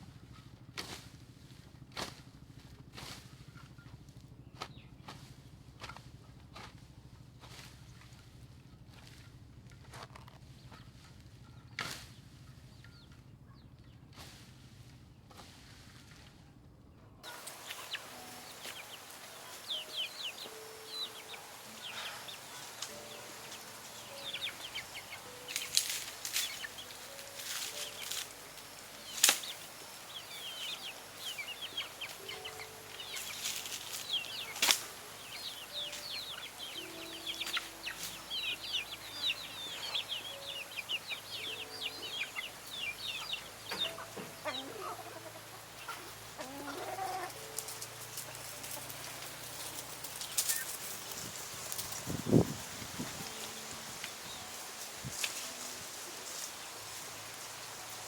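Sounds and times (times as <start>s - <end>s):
birds chirping: 17.2s - 58.0s
chickens clucking: 17.2s - 58.0s
sharp rustling: 22.5s - 39.0s, 47.3s - 58.0s.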